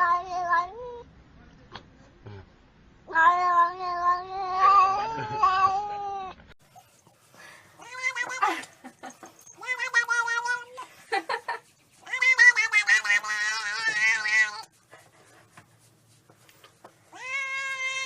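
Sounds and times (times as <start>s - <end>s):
cat meowing: 3.1s - 6.3s, 7.8s - 8.6s, 9.5s - 10.8s, 12.0s - 14.7s, 17.1s - 18.0s
cat yowling: 3.1s - 6.3s, 7.8s - 8.6s, 9.6s - 10.8s, 12.0s - 14.7s, 17.1s - 18.0s.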